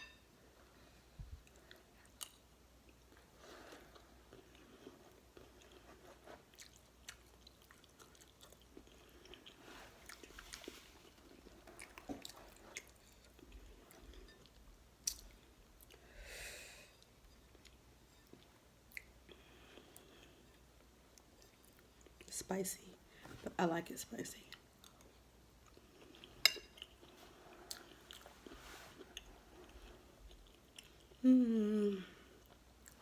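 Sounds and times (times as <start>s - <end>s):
wet chewing sounds: 1.4s - 14.2s.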